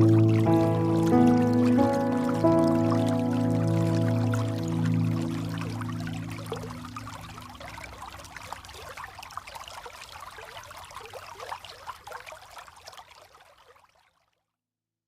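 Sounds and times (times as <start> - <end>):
waterfall and rain: 0.0 - 13.2.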